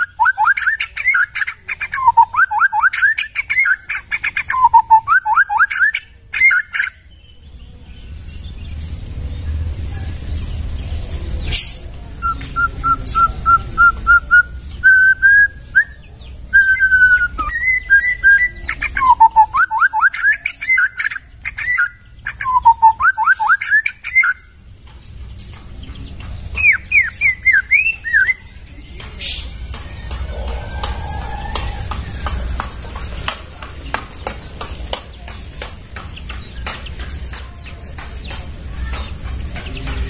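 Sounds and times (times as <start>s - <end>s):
bird singing whistled notes: 0.0s - 9.0s, 11.4s - 24.6s, 26.5s - 31.8s
steady low rumble: 29.4s - 33.6s.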